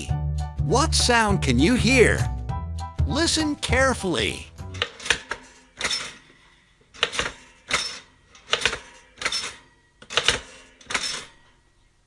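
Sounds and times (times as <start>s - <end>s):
toaster mechanism clicking: 7.0s - 11.4s.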